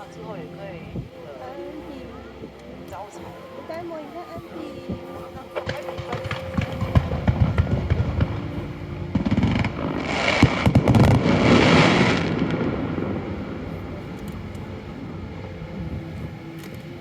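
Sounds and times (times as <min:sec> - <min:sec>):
rumbling echo: 0:04.8 - 0:17.0
fireworks bangs and crackling: 0:04.9 - 0:13.6.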